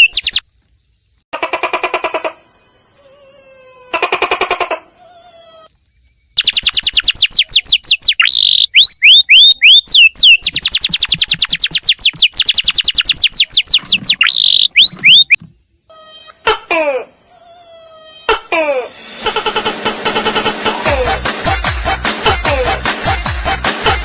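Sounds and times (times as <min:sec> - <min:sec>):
bird chirping sharply: 0:00.0 - 0:00.4, 0:06.4 - 0:15.4
down-slurred bird whistles: 0:00.0 - 0:00.5, 0:06.4 - 0:15.4.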